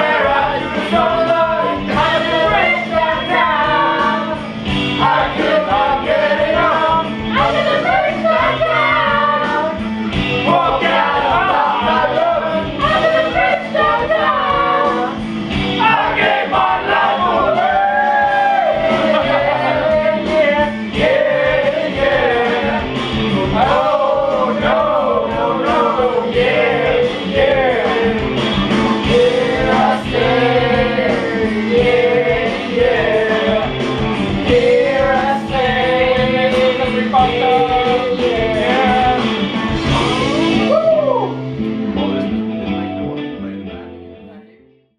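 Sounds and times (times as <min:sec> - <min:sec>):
band playing: 0:00.0 - 0:44.2
person singing: 0:29.0 - 0:41.4.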